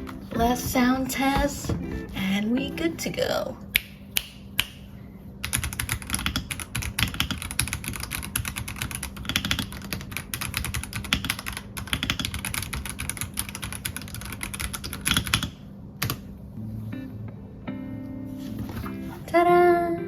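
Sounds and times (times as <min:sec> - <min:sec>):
mechanical keyboard typing: 0:05.4 - 0:16.2.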